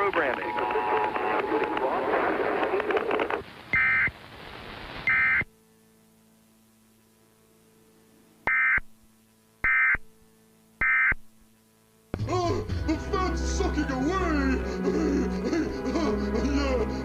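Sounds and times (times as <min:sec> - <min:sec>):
low steady hum: 0:03.4 - 0:17.0
shrill buzzing data bursts: 0:03.7 - 0:04.1, 0:05.0 - 0:05.6, 0:08.4 - 0:11.6.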